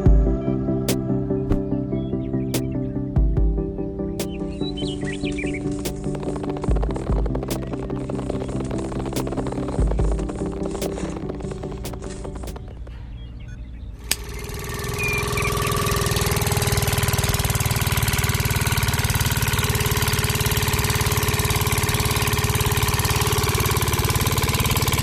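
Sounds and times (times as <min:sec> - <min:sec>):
small engine running: 0:04.7 - 0:13.0, 0:14.0 - 0:25.0.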